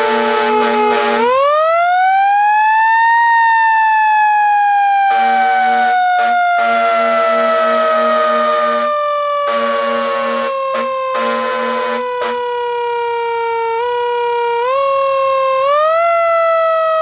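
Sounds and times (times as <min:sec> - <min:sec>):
buzzing horn pulsed blasts: 0:00.0 - 0:01.4, 0:05.1 - 0:12.6
siren winding up and down: 0:00.0 - 0:17.0.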